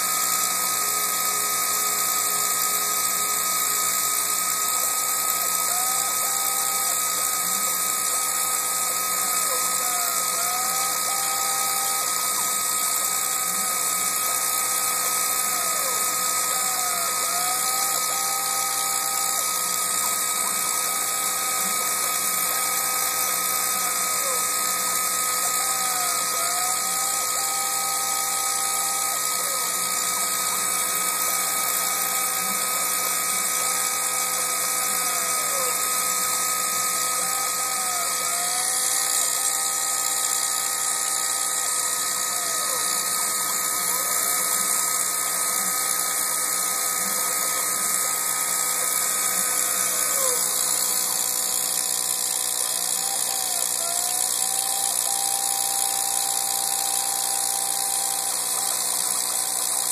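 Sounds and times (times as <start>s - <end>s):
milling machine whining: 0.0s - 59.9s.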